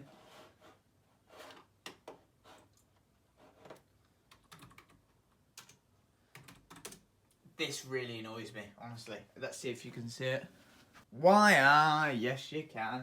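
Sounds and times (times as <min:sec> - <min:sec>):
computer keyboard typing: 0:04.3 - 0:07.1.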